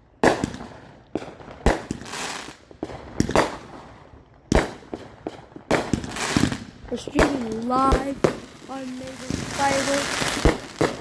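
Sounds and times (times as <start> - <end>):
fireworks bangs: 0.2 - 11.0
fireworks crackling sizzle: 1.2 - 3.8, 5.3 - 11.0.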